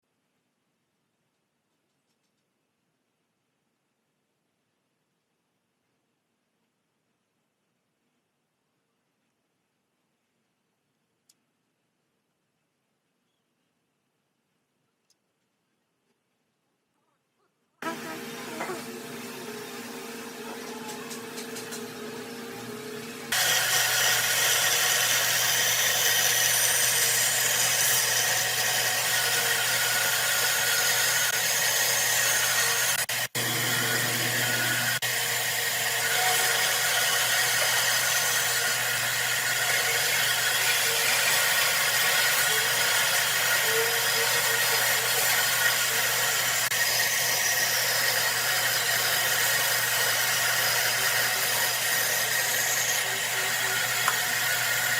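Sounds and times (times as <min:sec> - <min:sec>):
power tool cutting wood: 0:17.8 - 0:54.9.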